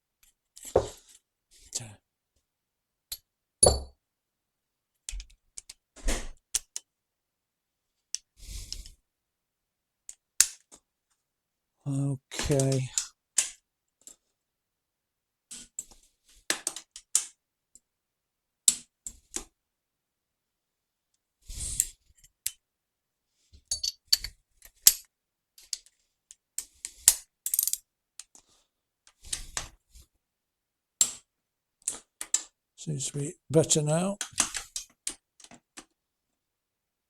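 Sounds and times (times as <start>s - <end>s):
tools knocking on metal: 3.6s - 3.9s.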